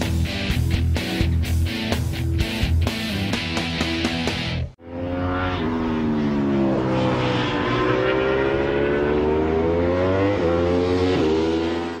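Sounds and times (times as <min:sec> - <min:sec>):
motorcycle engine shifting gears: 0:04.8 - 0:12.0.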